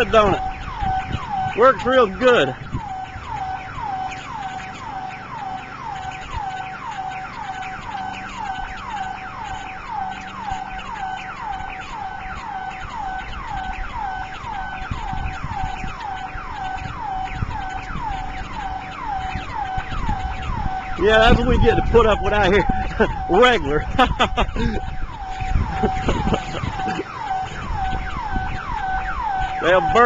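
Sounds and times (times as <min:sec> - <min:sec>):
burglar alarm siren: 0:00.0 - 0:30.0.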